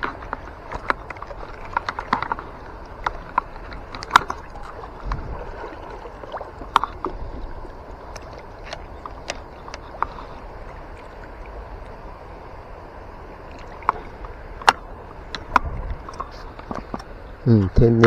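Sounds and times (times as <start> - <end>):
river water rushing and splashing: 0.0 - 17.4.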